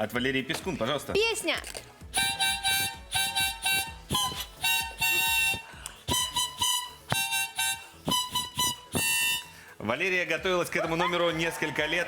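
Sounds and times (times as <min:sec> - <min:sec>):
harmonica chords: 0:02.0 - 0:10.0.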